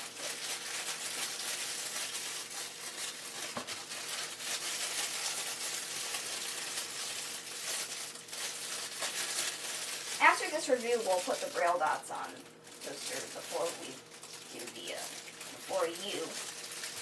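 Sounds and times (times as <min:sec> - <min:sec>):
plastic packaging crinkling: 0:00.0 - 0:17.0.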